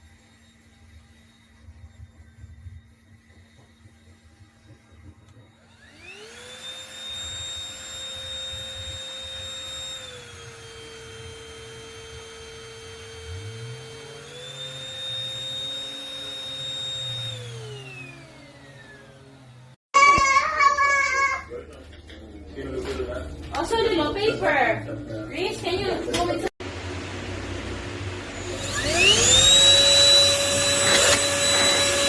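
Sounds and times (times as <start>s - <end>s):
handheld vacuum motor whine: 0.0s - 20.2s, 28.2s - 32.0s.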